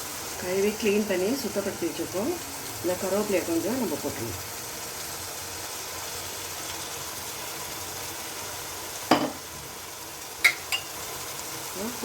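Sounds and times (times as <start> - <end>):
food sizzling in oil: 0.0 - 12.0
spoon knocking against pan: 9.1 - 9.4, 10.4 - 10.9.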